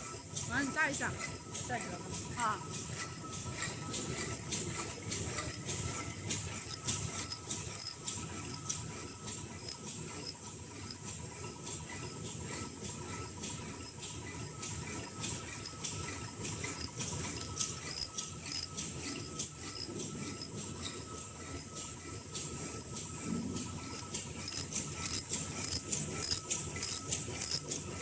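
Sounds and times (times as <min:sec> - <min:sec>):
faint steady machine whine: 0:00.0 - 0:28.0
fast light machine clicking: 0:00.0 - 0:28.0
machine hissing: 0:00.0 - 0:28.0.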